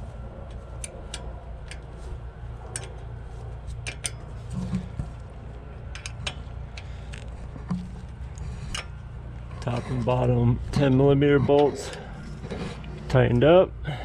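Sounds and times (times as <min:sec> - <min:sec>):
steady low hum: 0:00.0 - 0:14.0
metallic clicks of hand tools: 0:02.7 - 0:02.9, 0:03.8 - 0:04.2, 0:05.9 - 0:07.3.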